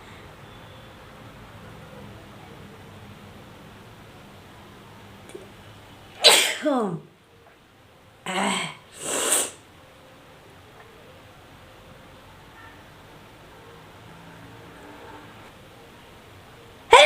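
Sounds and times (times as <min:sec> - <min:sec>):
person sneezing loudly: 0:06.2 - 0:06.8
short breathy bursts: 0:08.9 - 0:09.6.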